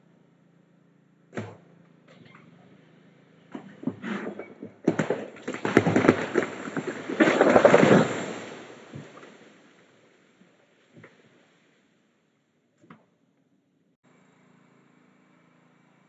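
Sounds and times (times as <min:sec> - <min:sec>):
tree crashing onto house: 0:03.5 - 0:11.7
wood cracking and splintering: 0:03.6 - 0:11.5.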